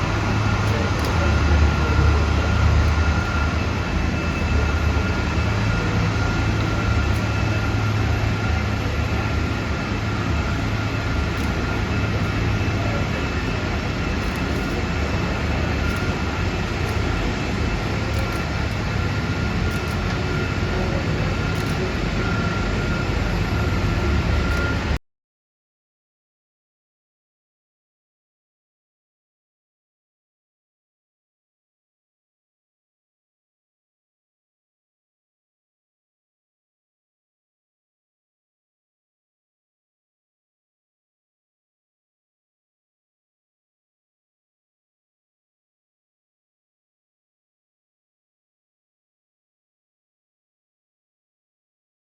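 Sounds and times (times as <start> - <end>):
jet engines running: 0.0 - 25.0.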